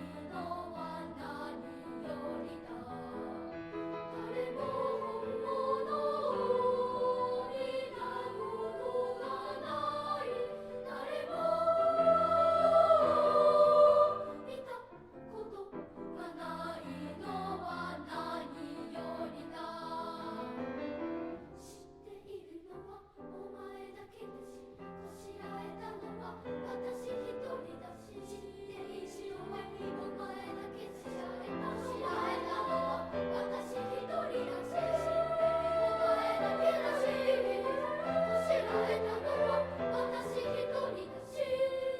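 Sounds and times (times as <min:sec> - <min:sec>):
children's choir singing: 0:00.0 - 0:41.9.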